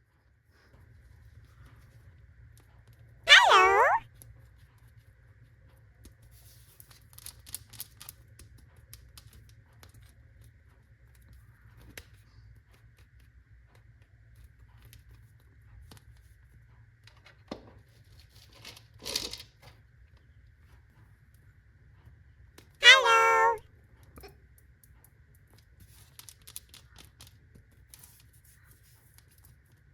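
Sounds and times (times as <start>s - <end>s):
faint clicks and crinkling: 6.0s - 16.3s, 24.6s - 29.9s.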